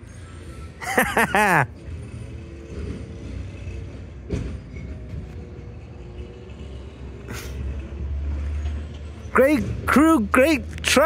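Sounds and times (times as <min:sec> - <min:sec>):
truck engine rumbling: 0:00.0 - 0:11.0.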